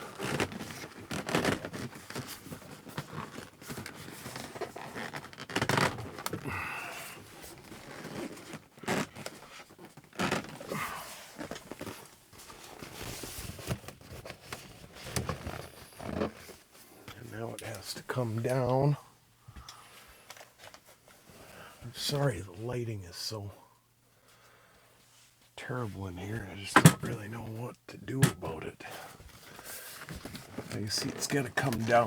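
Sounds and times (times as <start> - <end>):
heavy fabric rustling and scraping: 0.0 - 18.9, 28.9 - 32.0.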